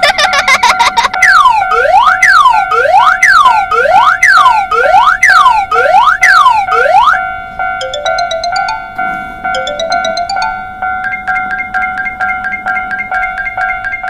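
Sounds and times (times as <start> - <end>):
chiming xylophone-like notes: 0.0 - 3.6, 4.2 - 14.0
electronic siren-like whoop: 0.1 - 7.2.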